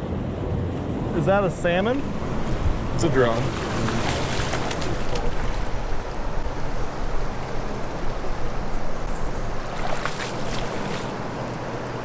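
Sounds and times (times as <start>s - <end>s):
fast river rushing: 1.2s - 12.0s.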